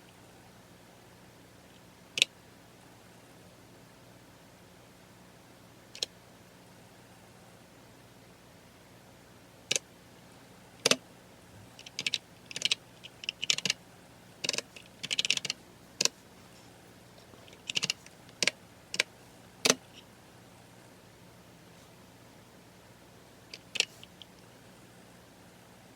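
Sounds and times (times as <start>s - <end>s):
computer keyboard typing: 10.8s - 11.0s, 11.8s - 13.8s, 14.4s - 16.2s, 17.5s - 19.8s, 23.5s - 24.2s.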